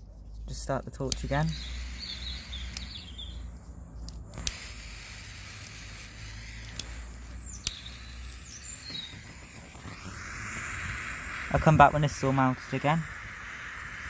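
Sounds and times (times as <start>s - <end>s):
sharp clicks: 0.1s - 14.0s
gas torch burning: 0.4s - 14.0s
faint bird chirps: 1.2s - 3.5s, 6.1s - 14.0s.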